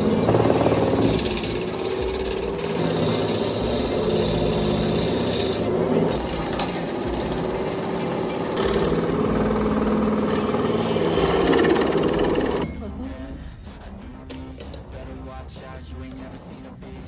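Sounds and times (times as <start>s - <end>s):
turning tool cutting wood: 0.0s - 12.6s
wood lathe motor hum: 0.0s - 12.6s.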